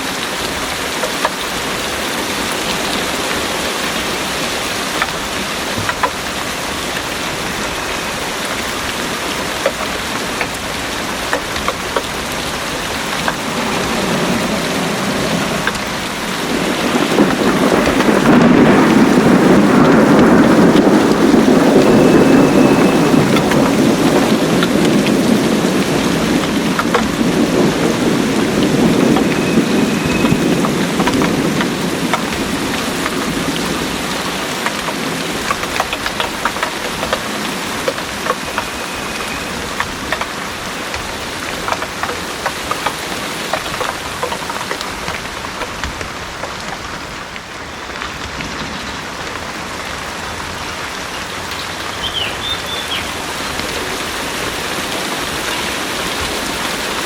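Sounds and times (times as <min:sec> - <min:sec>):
heavy rain pouring: 0:00.0 - 0:57.0
thunder rumble: 0:00.0 - 0:57.0
drops ticking nearby: 0:04.9 - 0:14.3, 0:26.1 - 0:46.8.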